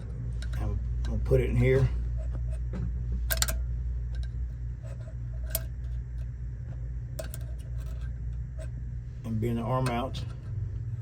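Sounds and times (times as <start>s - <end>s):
low hum: 0.0s - 11.0s.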